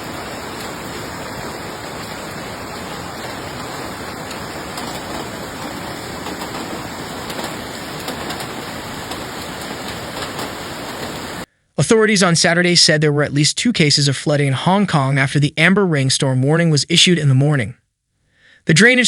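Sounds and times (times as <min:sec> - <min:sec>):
rushing water: 0:00.0 - 0:11.5.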